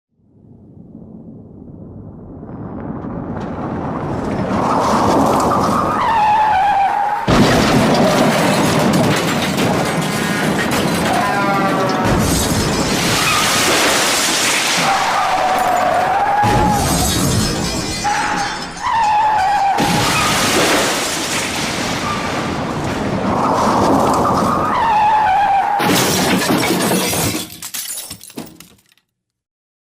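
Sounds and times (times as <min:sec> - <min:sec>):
crunching and rattling debris: 0:02.7 - 0:29.2
tires skidding and squealing: 0:04.2 - 0:17.3, 0:17.9 - 0:21.1, 0:21.9 - 0:25.9
heavy crash impact: 0:07.2 - 0:24.8, 0:25.8 - 0:28.3.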